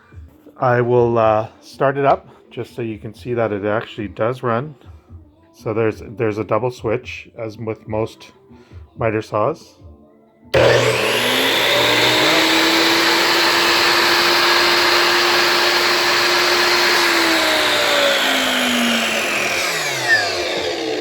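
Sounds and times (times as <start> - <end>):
mitre saw motor whining: 10.6 - 21.0.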